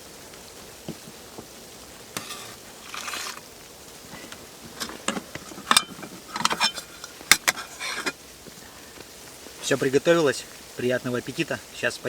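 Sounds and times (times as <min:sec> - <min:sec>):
camping gear clicking and clattering: 0:00.0 - 0:09.6
rustling: 0:00.0 - 0:12.0.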